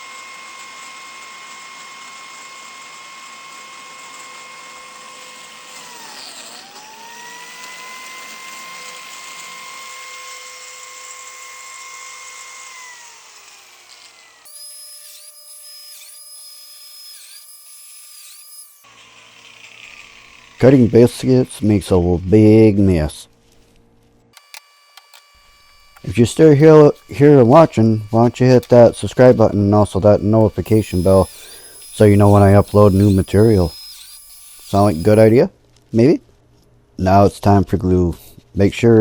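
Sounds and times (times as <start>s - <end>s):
electric motor high whine: 0.0s - 22.9s, 24.4s - 35.4s.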